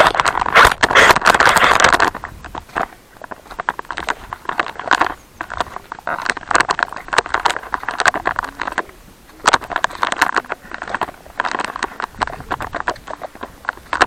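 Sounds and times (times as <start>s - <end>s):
footsteps crunching on dry ground: 0.0s - 14.0s.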